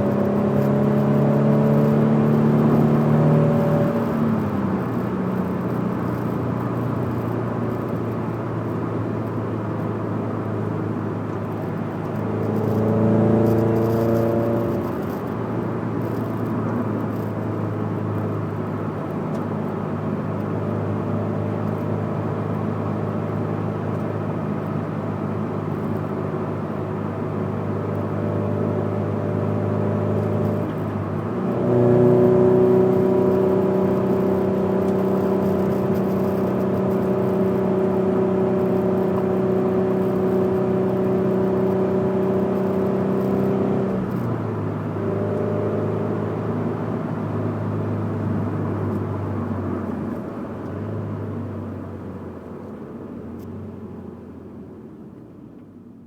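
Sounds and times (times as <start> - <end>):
car engine rumbling: 0.0 - 56.0.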